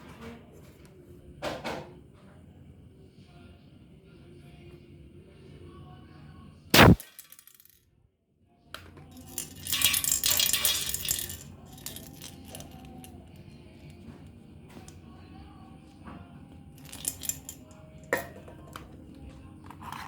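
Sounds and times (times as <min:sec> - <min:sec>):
airsoft pistol shot snap: 0:06.8 - 0:07.1
metallic rattling and scraping: 0:09.2 - 0:13.1, 0:16.8 - 0:18.4.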